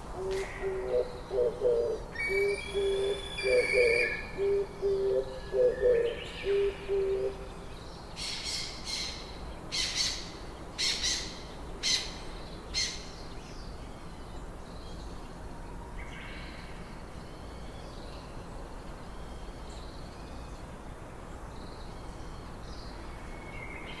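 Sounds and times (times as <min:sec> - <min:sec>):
steady background hiss: 0:00.0 - 0:24.0
low hooting bird calls: 0:00.2 - 0:07.5.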